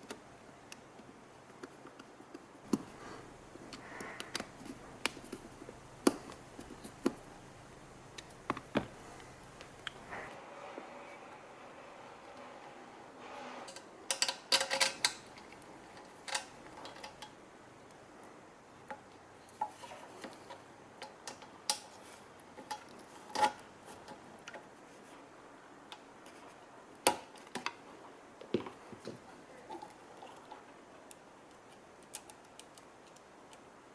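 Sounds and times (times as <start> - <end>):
metal parts and tools clinking: 13.7 - 17.4.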